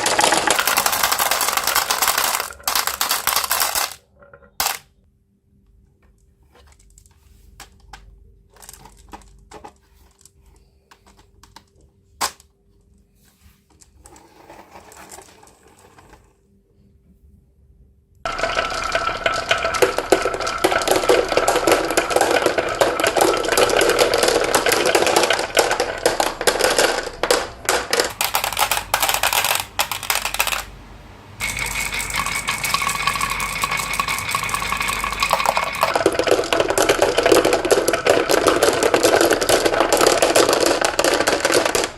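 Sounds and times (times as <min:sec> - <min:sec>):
marbles clattering down a track: 0:00.0 - 0:04.9, 0:07.6 - 0:10.2, 0:14.0 - 0:16.4, 0:18.3 - 0:30.8, 0:31.4 - 0:41.9.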